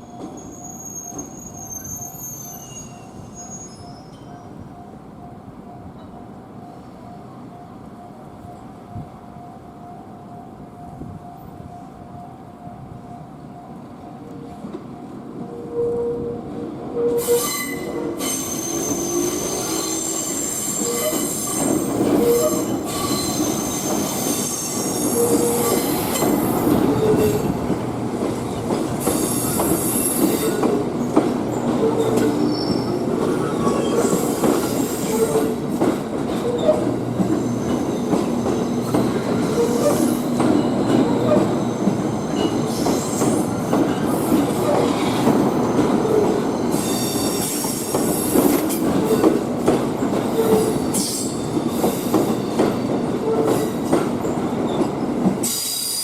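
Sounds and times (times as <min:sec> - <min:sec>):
wheel flanges squealing: 0:00.2 - 0:04.4, 0:28.5 - 0:35.6
train running gear rumble: 0:18.9 - 0:55.7.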